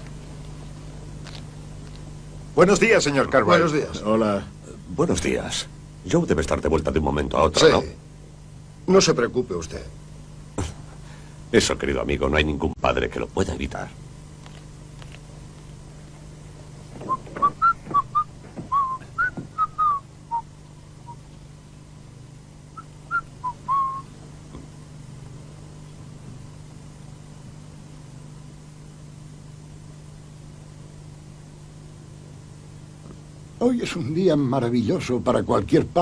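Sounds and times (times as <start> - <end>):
steady low hum: 0.0 - 36.0
person whistling: 17.1 - 21.2, 22.8 - 24.1.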